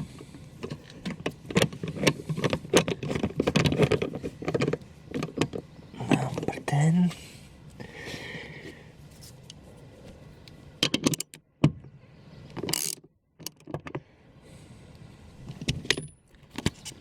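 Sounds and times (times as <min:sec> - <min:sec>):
tools clicking and knocking: 0:00.2 - 0:06.6, 0:10.8 - 0:11.8, 0:12.6 - 0:14.0
scraping rustle: 0:09.0 - 0:10.2.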